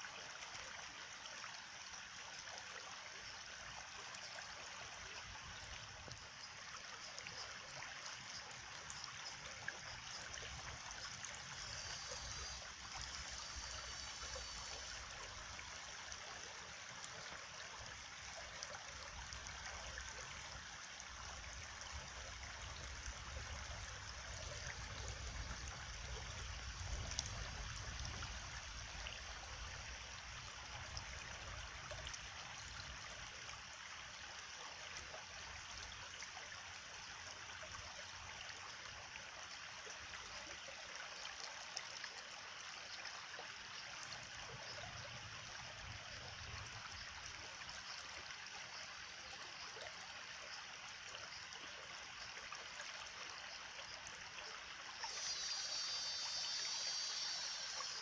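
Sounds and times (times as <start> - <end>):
stream water trickling: 0.0 - 58.0.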